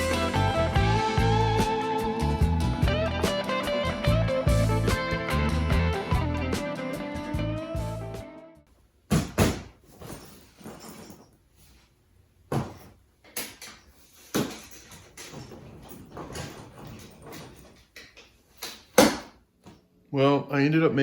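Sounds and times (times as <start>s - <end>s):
suitcase knocks and thumps: 9.1s - 10.9s, 12.5s - 12.9s
rubbing and rustling: 9.8s - 13.0s.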